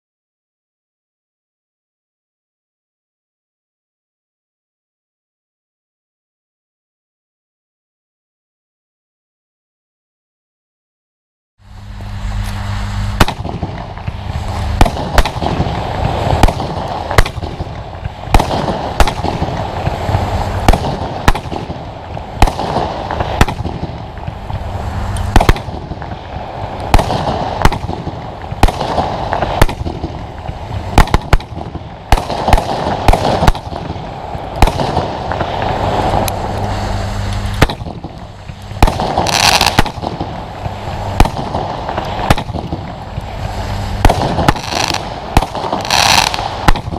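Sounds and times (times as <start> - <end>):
firework crackling: 11.6 - 46.9
firework high hiss: 11.6 - 46.9
firework bangs: 11.8 - 46.9.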